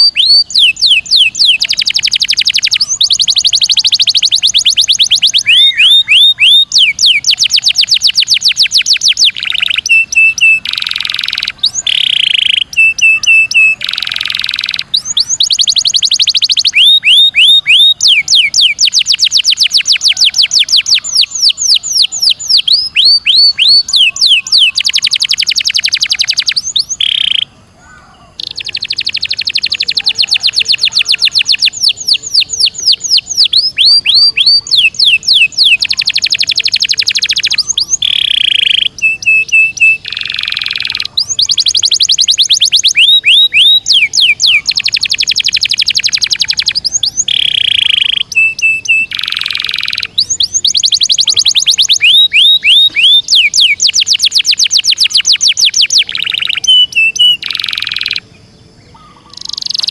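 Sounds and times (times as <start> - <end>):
canary singing trills: 0.0 - 59.9.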